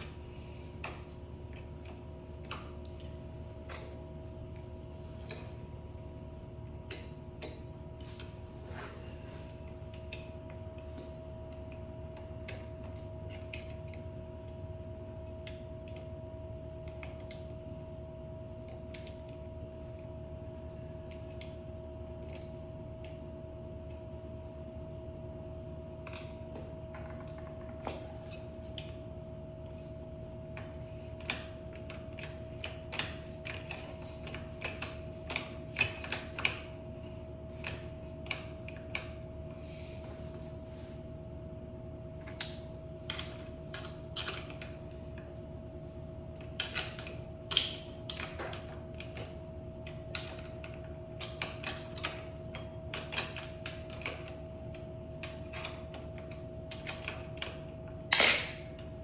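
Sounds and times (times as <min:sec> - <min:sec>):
electrical hum: 0:00.0 - 0:59.0
clicks of hand tools and metal parts: 0:55.5 - 0:58.9.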